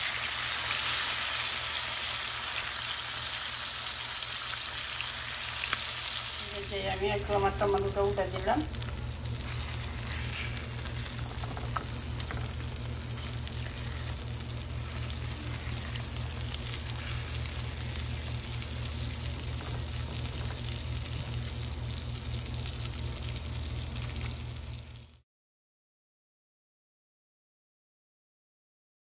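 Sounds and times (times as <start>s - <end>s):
tomato slices sizzling in oil: 0.0s - 25.2s
low hum: 5.2s - 24.9s.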